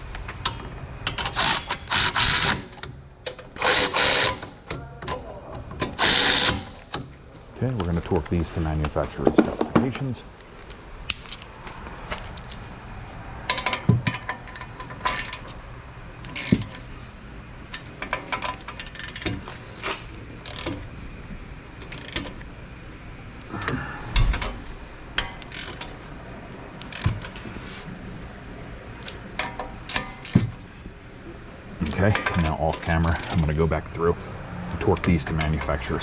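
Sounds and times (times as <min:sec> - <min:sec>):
hand ratchet clicking: 0:00.2 - 0:04.6, 0:05.8 - 0:07.0, 0:13.5 - 0:15.6, 0:16.2 - 0:16.9, 0:17.7 - 0:20.9, 0:21.8 - 0:22.4, 0:25.2 - 0:26.0, 0:26.8 - 0:27.5, 0:29.4 - 0:30.6, 0:31.8 - 0:33.5.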